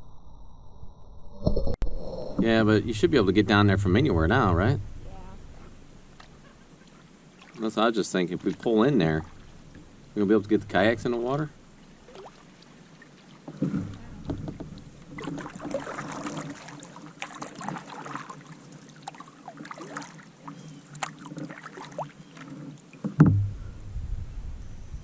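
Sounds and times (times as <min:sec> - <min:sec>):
low rumble: 0:00.0 - 0:06.6, 0:23.4 - 0:25.0
paddle splashing in water: 0:04.9 - 0:23.6
knocks: 0:23.1 - 0:23.6
loud thump: 0:23.2 - 0:23.6.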